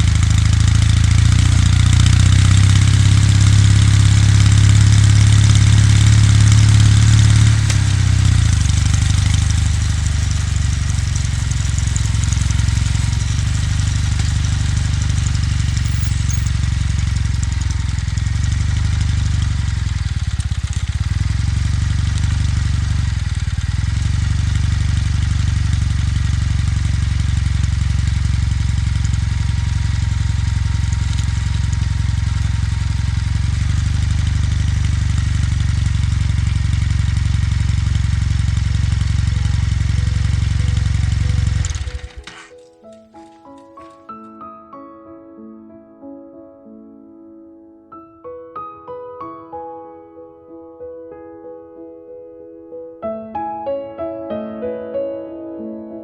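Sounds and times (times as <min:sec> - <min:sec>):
motorcycle engine running: 0:00.0 - 0:44.0.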